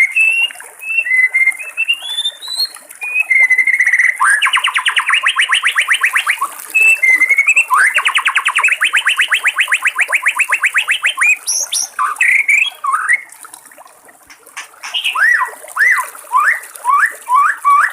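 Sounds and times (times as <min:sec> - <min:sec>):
bird singing whistled phrases: 0:00.0 - 0:13.3, 0:14.6 - 0:17.9
bird fast trills: 0:14.3 - 0:16.0.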